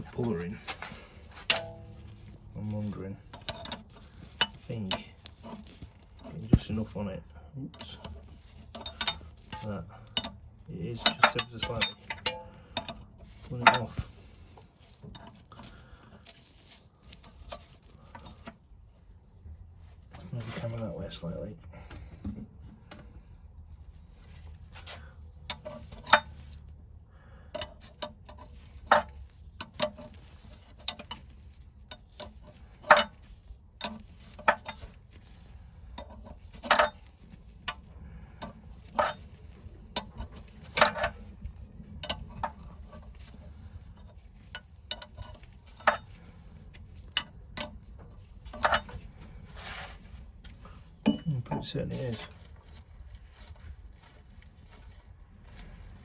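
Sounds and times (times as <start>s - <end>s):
spanner clicking on metal: 11.0s - 13.0s.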